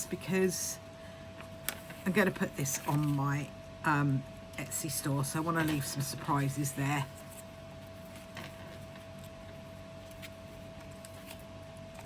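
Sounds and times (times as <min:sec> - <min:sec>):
faint hum: 0:00.0 - 0:12.0
paper pages handling: 0:01.4 - 0:03.5, 0:05.2 - 0:12.0.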